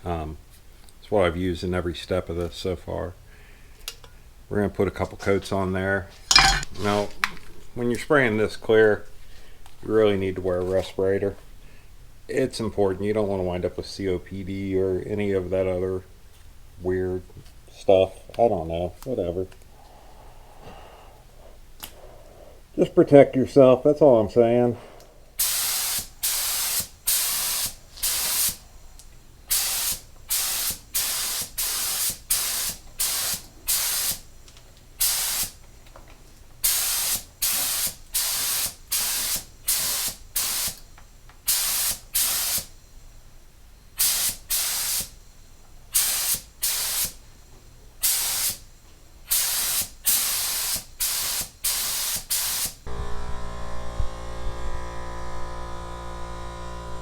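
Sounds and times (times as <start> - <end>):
aerosol spray hissing: 25.4 - 28.6, 29.5 - 34.3, 35.0 - 35.6, 36.6 - 40.8, 41.4 - 42.7, 44.0 - 45.2, 45.9 - 47.2, 48.0 - 48.7, 49.3 - 52.9
steady electric hum: 52.7 - 57.0.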